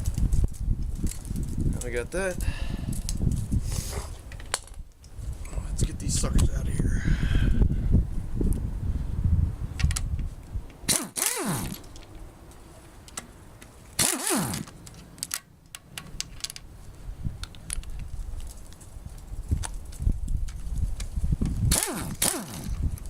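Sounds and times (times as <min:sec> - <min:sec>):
power driver spinning bolts: 0:10.9 - 0:12.0, 0:14.0 - 0:14.9
metal clicks and clatter of tools: 0:13.1 - 0:16.6.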